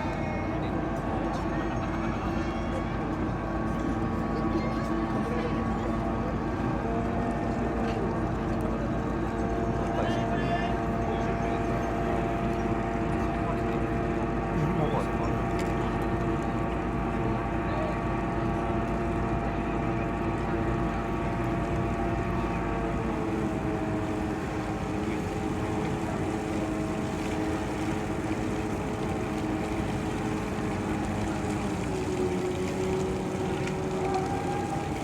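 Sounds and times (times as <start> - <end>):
ship machinery droning: 10.7 - 35.0.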